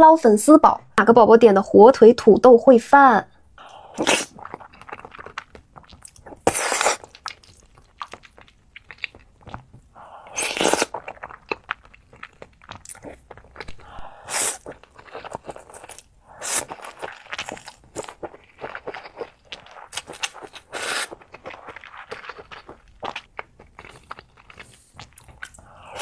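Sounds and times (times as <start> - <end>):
chewing and crunching food: 3.6 - 26.0.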